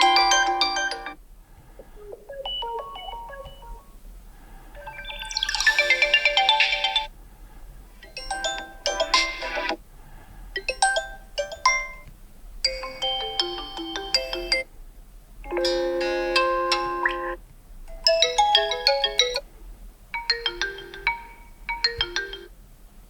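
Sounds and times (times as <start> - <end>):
phone ringtone chimes: 0.0 - 1.2, 2.0 - 4.0, 4.8 - 7.1, 8.1 - 9.8, 12.7 - 14.6, 15.5 - 17.4, 18.0 - 19.4, 20.2 - 22.5.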